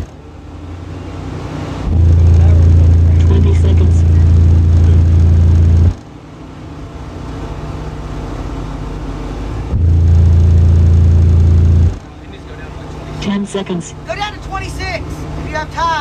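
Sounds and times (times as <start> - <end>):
deep bass tone from subwoofers: 1.8 - 6.0, 9.4 - 12.0.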